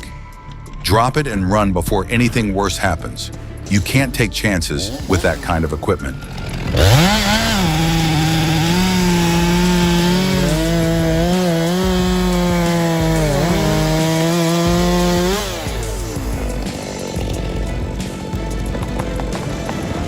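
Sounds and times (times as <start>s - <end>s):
chainsaw cutting wood: 4.8s - 20.0s.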